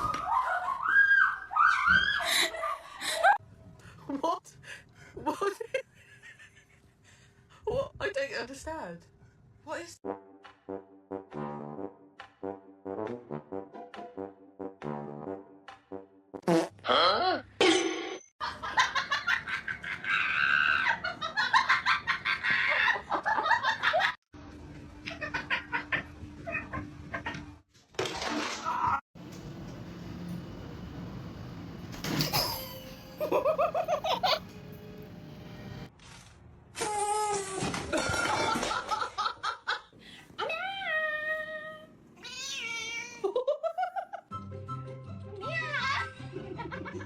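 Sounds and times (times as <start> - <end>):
steady low hum: 29.2 - 35.9
cat meowing: 42.2 - 43.2.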